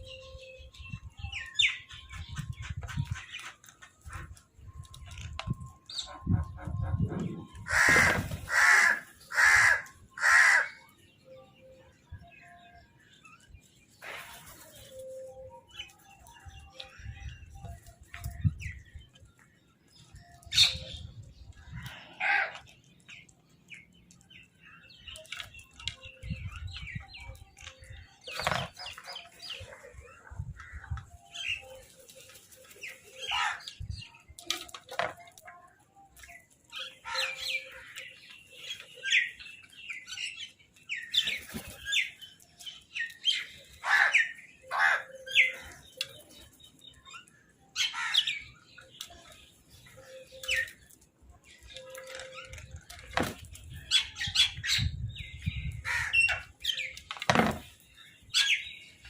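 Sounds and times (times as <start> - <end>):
crows calling: 7.6 - 10.9, 43.8 - 45.5, 47.8 - 48.5, 55.8 - 56.5.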